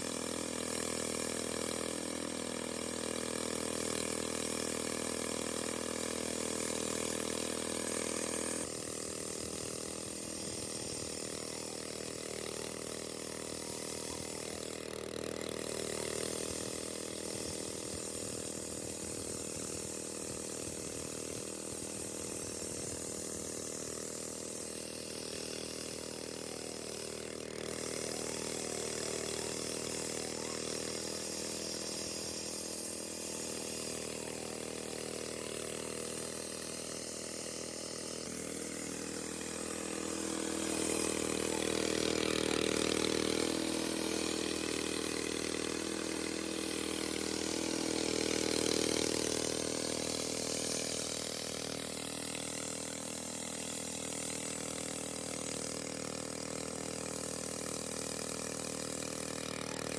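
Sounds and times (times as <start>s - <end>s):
concrete cutting machine running: 0.0s - 59.9s.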